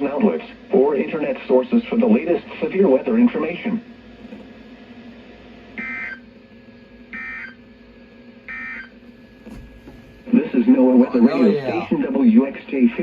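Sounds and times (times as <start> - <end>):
faint radio hum: 10.2 - 13.0.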